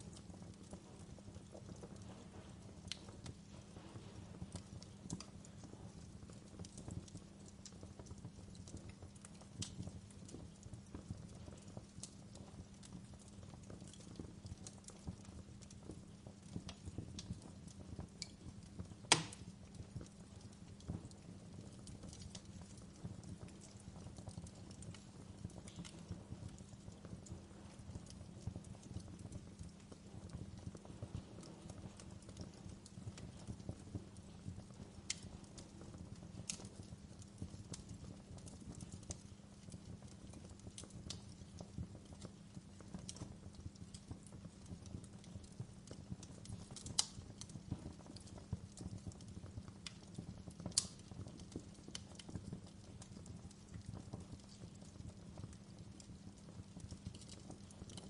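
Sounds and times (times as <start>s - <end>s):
wood fire crackling: 0.0s - 58.0s
loud sharp pop: 19.1s - 19.4s.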